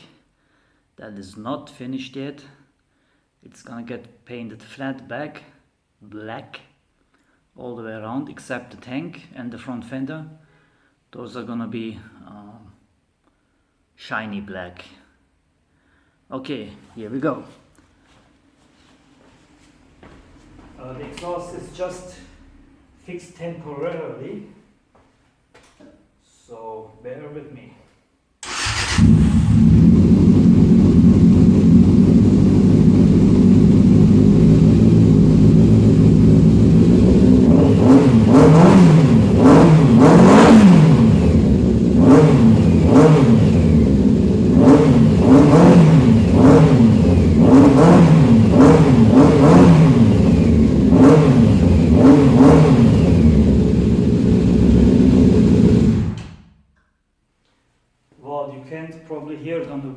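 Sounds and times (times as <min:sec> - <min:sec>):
motorcycle engine revving: 0:28.4 - 0:56.4.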